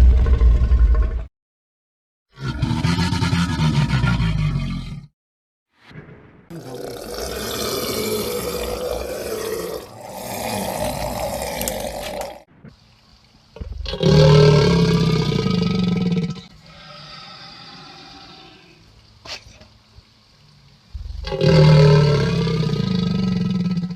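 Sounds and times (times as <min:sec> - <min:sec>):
alligator roaring growls: 0:00.0 - 0:01.3, 0:02.3 - 0:05.1, 0:06.5 - 0:12.5, 0:13.6 - 0:18.8, 0:21.0 - 0:23.9.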